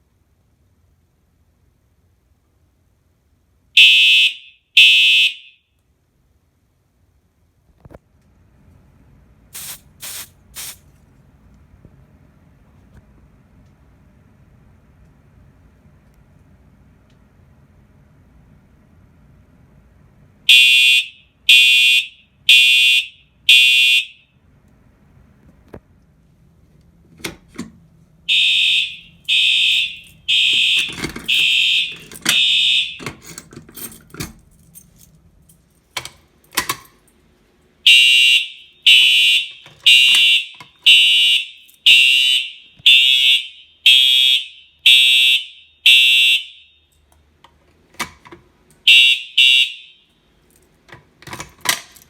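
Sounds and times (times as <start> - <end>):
fire alarm horns pulsing: 3.8 - 5.7, 20.5 - 24.4, 28.2 - 33.9, 37.8 - 47.1, 48.8 - 50.3.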